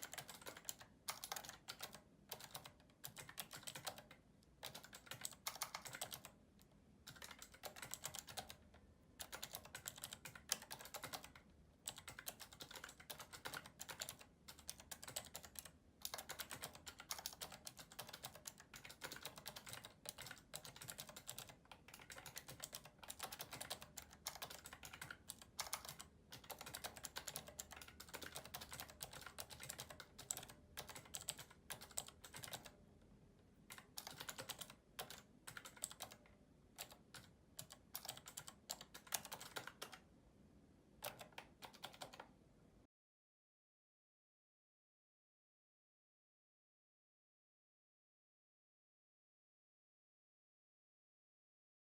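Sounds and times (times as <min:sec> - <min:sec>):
clicky mechanical keyboard typing: 0:00.0 - 0:06.4, 0:07.0 - 0:32.8, 0:33.7 - 0:40.1, 0:41.0 - 0:42.4.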